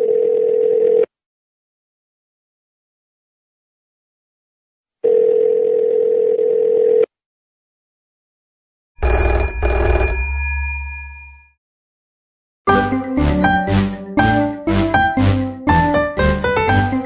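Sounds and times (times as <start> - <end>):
telephone ringback tone: 0.0 - 1.1, 5.0 - 7.1, 9.0 - 11.5.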